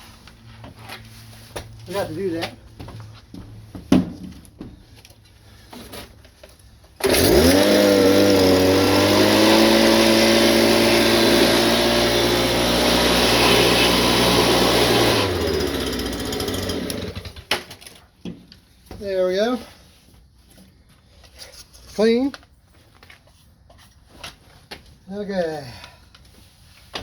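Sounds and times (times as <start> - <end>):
blower motor whine: 7.0 - 17.3.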